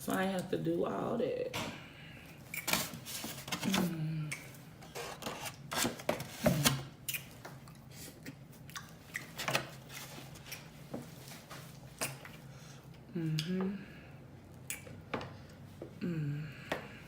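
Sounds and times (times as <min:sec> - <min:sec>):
chewing and mouth smacks: 0:07.0 - 0:09.4, 0:14.5 - 0:15.0.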